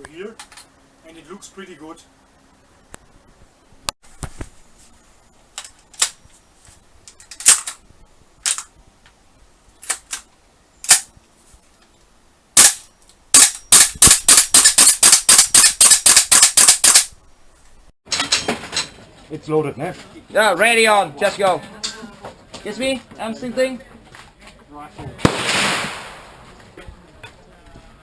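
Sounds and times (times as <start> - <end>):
airsoft rifle automatic fire: 7.3 - 7.8, 10.9 - 11.1, 12.6 - 17.2
airsoft rifle single shots: 10.9 - 11.1, 12.6 - 17.1.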